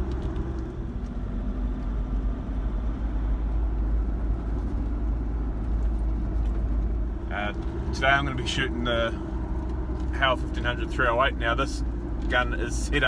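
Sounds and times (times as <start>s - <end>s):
road noise: 0.0s - 13.0s
truck engine rumble: 0.0s - 13.0s.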